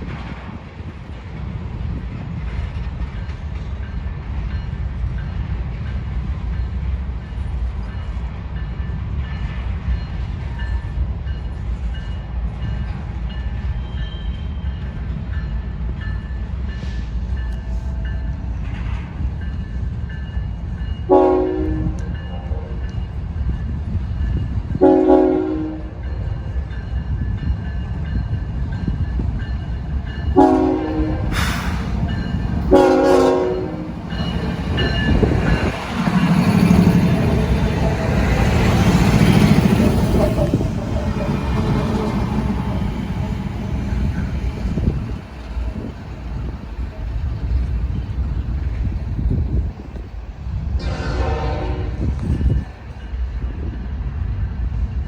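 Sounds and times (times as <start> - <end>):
diesel locomotives rumbling: 0.0 - 55.0
locomotive air horn blasts: 21.1 - 22.7, 24.8 - 25.9, 30.4 - 31.8, 32.6 - 34.2, 50.8 - 52.2.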